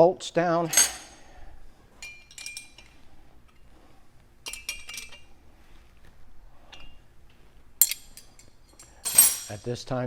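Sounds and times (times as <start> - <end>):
metal tool clicking against bolts: 7.8 - 9.7.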